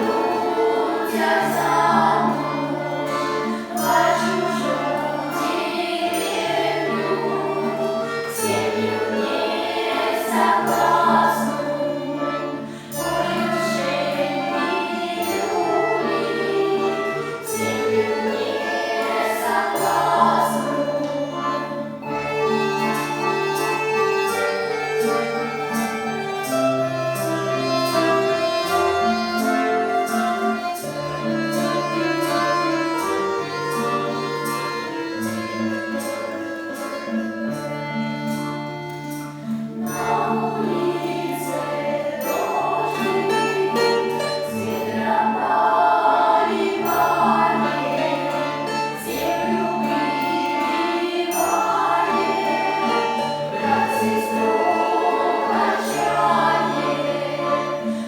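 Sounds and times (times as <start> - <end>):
group of voices singing: 0.0 - 23.8, 39.8 - 58.0
folk instrument ensemble playing: 0.0 - 58.0.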